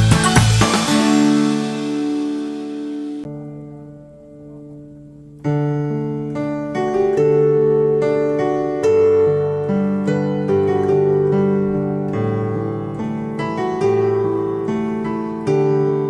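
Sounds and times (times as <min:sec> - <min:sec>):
electric piano music: 0:00.0 - 0:16.0.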